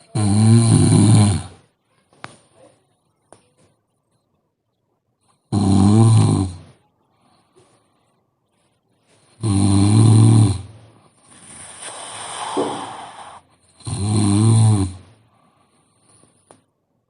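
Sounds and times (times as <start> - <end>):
woman snoring: 0.0 - 1.6, 5.5 - 6.7, 9.4 - 10.7, 11.4 - 15.0
soft breath: 7.0 - 9.4, 10.8 - 13.8, 15.2 - 16.7.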